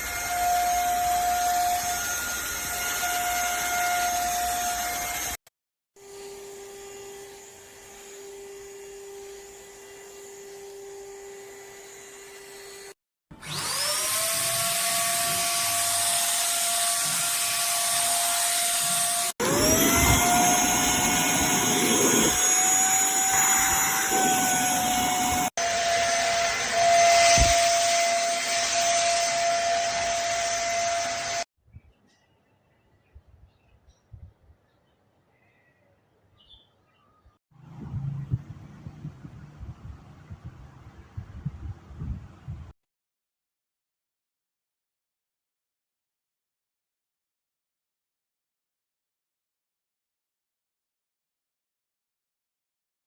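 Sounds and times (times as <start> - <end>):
vacuum cleaner motor whining: 0.0 - 5.4, 13.4 - 31.4.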